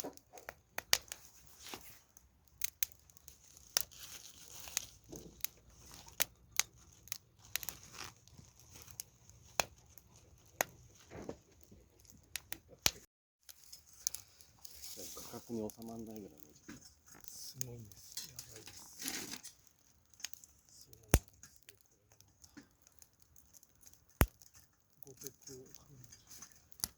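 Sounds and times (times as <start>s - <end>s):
campfire crackling and popping: 0.0s - 26.9s.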